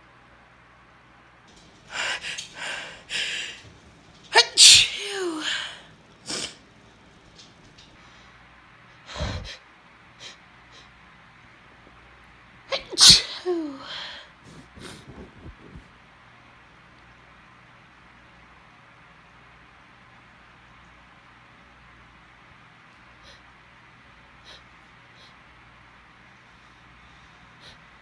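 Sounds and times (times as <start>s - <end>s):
hitching breaths: 1.5s - 4.4s, 9.0s - 9.6s, 13.8s - 15.9s
woman sneezing: 4.3s - 6.6s, 12.7s - 14.2s.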